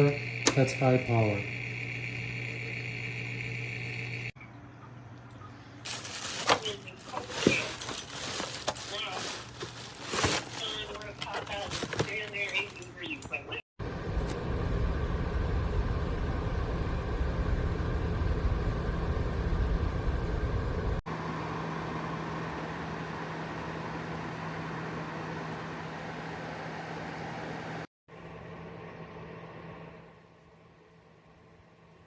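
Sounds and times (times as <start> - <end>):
space heater fan whirring: 0.0 - 32.0
low rumble: 13.8 - 21.0.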